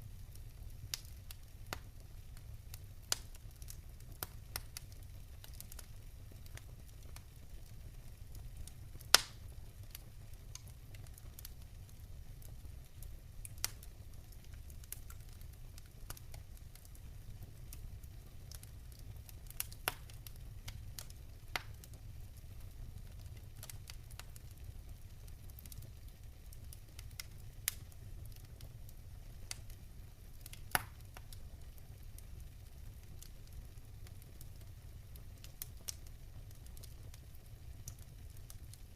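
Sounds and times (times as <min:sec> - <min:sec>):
campfire crackling: 0:00.0 - 0:38.9
fire popping: 0:00.0 - 0:38.9.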